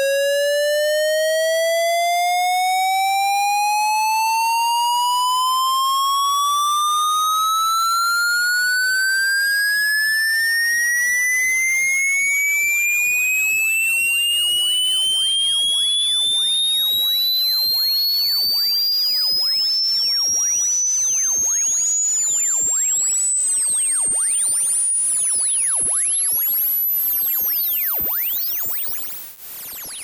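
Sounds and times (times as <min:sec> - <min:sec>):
electronic tone sweeping upward: 0:06.8 - 0:30.0.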